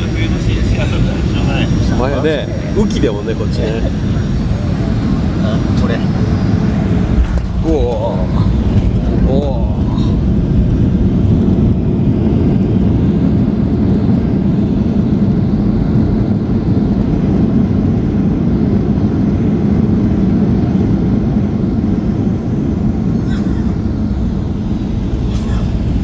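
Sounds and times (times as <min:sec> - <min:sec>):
jet cabin engine and airflow rumble: 0:00.0 - 0:26.0.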